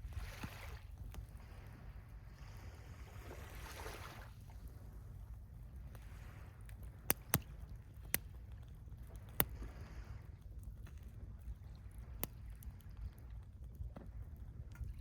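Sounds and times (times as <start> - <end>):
wind: 0.0 - 15.0
bonfire crackling: 6.5 - 9.6.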